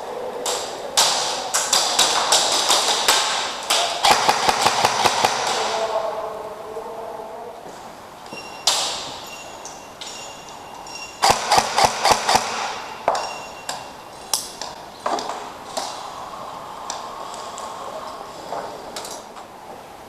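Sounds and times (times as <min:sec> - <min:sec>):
airsoft gun shots: 0:01.8 - 0:05.8, 0:11.2 - 0:13.1
metallic ping: 0:12.8 - 0:14.1.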